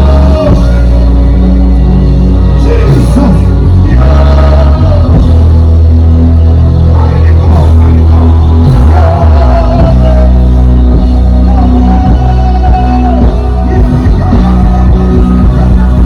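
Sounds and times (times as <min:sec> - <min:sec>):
loud praise music with heavy bass: 0:00.0 - 0:16.0.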